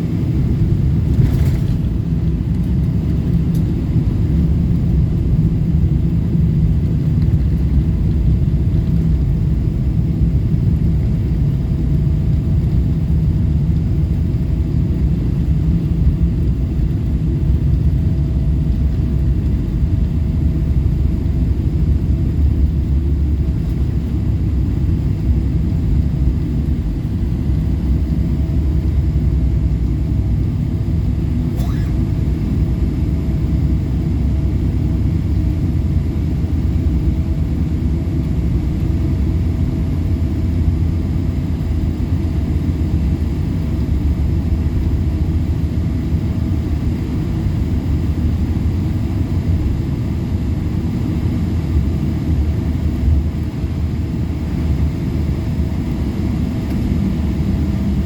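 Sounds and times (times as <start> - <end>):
airliner cabin rumble: 0.0 - 58.0.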